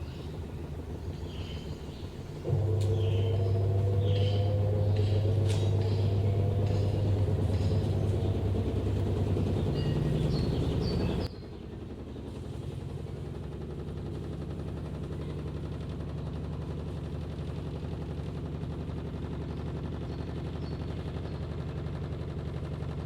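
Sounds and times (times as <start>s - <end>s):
washing machine rattling: 2.1s - 11.3s.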